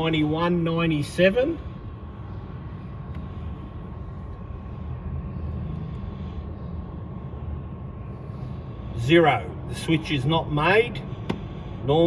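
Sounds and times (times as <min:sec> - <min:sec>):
machinery rumble and hum: 0:00.0 - 0:12.0.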